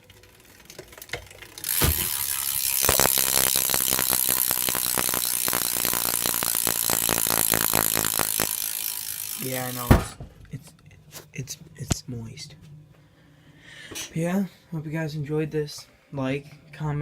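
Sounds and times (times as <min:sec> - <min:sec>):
bicycle hub ratchet clicking: 0:00.0 - 0:09.9.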